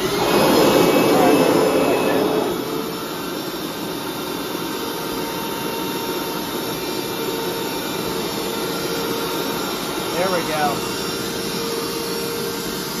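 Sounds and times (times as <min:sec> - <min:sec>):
water sucked through hose: 0:00.0 - 0:03.4
carpet cleaner vacuum motor whining: 0:00.0 - 0:13.0.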